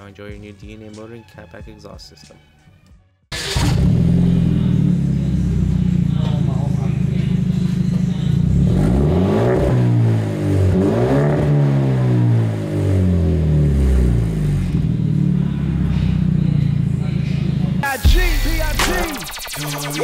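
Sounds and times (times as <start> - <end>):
car engine idling and revving: 3.3 - 19.4.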